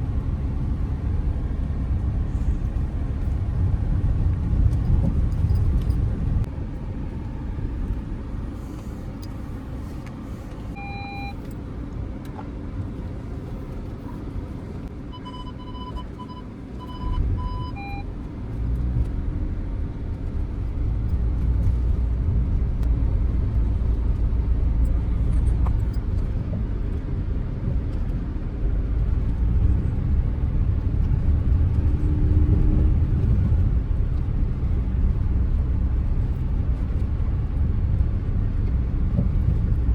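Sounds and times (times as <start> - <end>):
car engine rumble: 0.0 - 39.9
quick electronic beeps: 10.8 - 11.4, 15.1 - 18.0.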